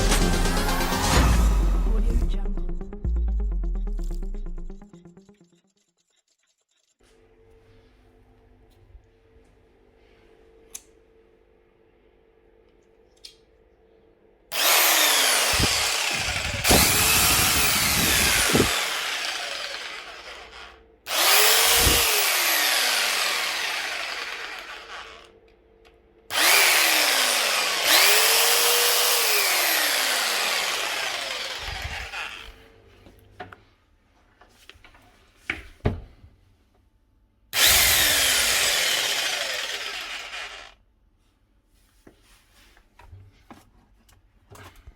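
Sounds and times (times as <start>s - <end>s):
jigsaw running: 14.5s - 25.3s, 26.3s - 32.6s, 37.6s - 40.8s.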